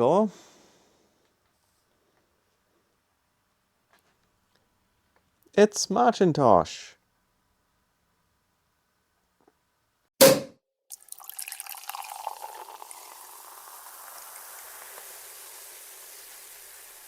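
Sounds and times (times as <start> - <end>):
champagne pouring and fizzing: 10.9 - 17.0.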